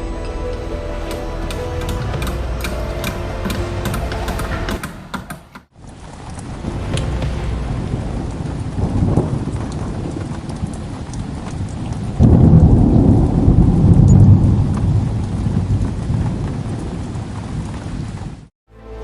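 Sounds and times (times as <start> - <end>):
steady rain: 0.0 - 4.7, 5.6 - 18.5
low roll of thunder: 5.8 - 18.4.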